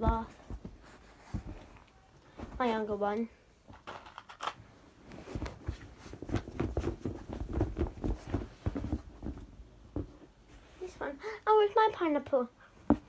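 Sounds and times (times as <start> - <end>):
soft knocks of toys handled: 5.4 - 10.3.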